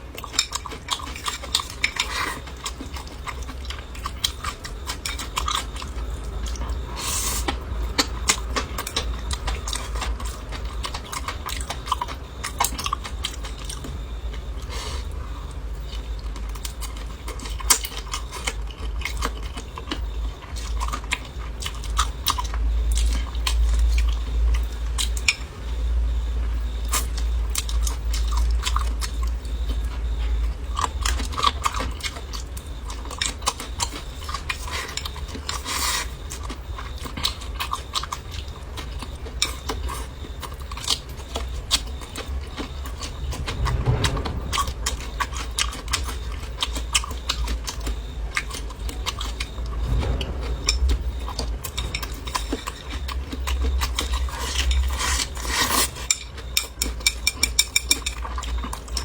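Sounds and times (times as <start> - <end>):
chewing and biting: 0.0 - 15.2, 15.8 - 25.5, 26.9 - 59.0
steady low rumble: 0.0 - 59.0
utensils clinking on dishes: 51.7 - 59.0.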